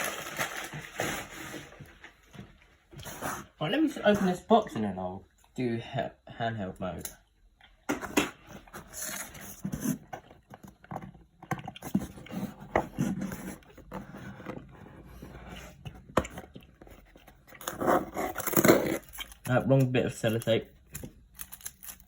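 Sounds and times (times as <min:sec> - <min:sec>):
fingernails scraping tape: 0:17.6 - 0:19.4.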